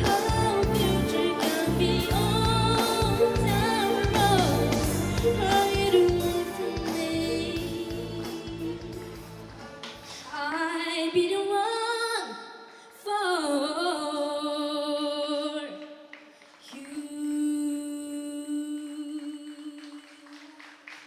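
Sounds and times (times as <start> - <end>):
woman singing unaccompanied: 0.0 - 9.4, 13.0 - 16.0, 16.7 - 20.6.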